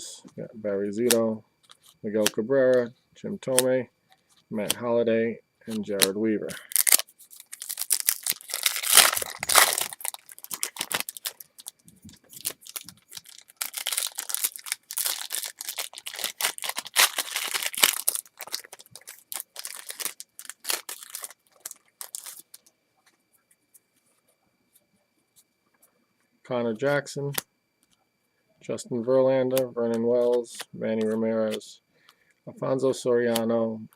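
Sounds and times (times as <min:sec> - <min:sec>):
card pack wrapper tearing and crinkling: 0:05.7 - 0:22.6.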